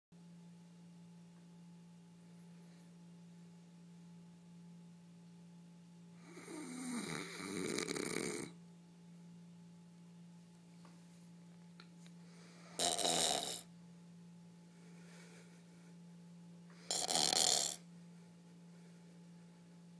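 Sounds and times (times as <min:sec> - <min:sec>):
steady low hum: 0:00.2 - 0:19.9
person snoring: 0:06.2 - 0:08.6, 0:12.4 - 0:13.7, 0:16.7 - 0:17.9.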